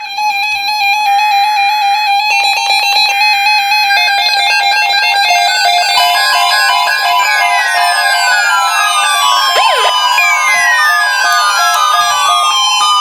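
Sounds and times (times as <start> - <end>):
synthesizer music: 9.6 - 11.2.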